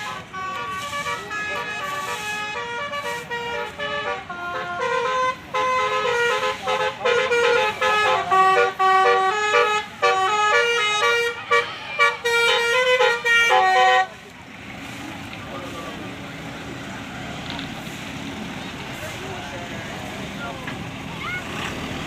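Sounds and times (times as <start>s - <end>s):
musical bus horn melody: 0.0s - 14.2s.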